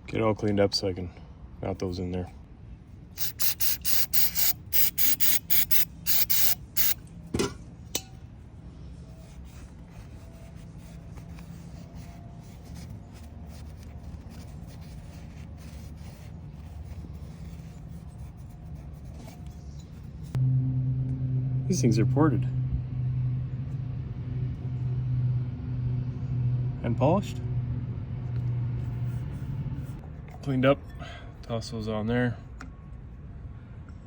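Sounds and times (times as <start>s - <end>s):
hard rubbing strokes on metal: 3.2s - 7.0s.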